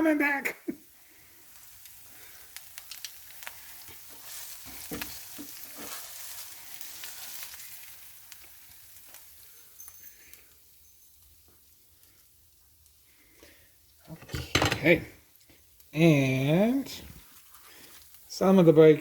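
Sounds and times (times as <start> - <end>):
food sizzling in a skillet: 0.0 - 19.0
spatulas scraping a pan: 3.4 - 7.9, 14.1 - 15.1.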